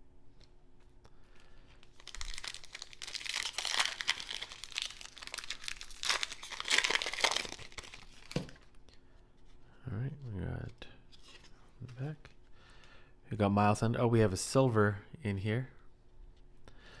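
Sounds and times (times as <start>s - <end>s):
foil wrapper tearing and crumpling: 1.8s - 8.6s.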